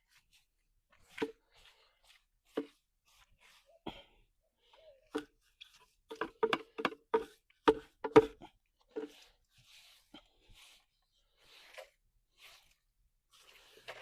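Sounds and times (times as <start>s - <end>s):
hand tool knocking and scraping: 5.1s - 9.2s.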